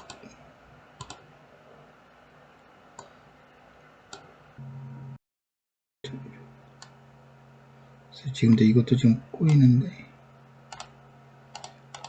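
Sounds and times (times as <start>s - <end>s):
low steady hum: 0.0s - 5.2s, 6.0s - 12.0s
computer mouse clicks: 1.0s - 1.2s, 3.0s - 3.2s, 10.7s - 10.9s, 11.5s - 12.0s.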